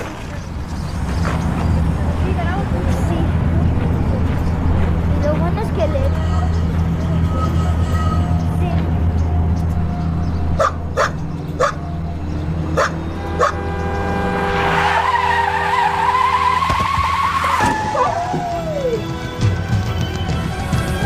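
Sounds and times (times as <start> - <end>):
car tyres screeching: 6.1 - 19.1
dog barking: 10.6 - 11.8, 12.8 - 13.6.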